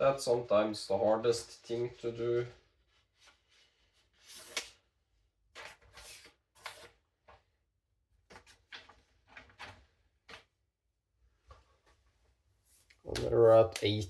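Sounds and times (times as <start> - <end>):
knife slicing paper: 4.2 - 4.8, 5.6 - 7.0.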